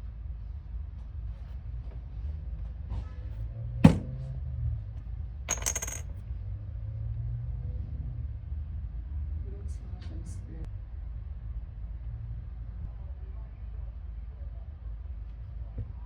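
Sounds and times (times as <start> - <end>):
metallic jingle: 5.5 - 6.0.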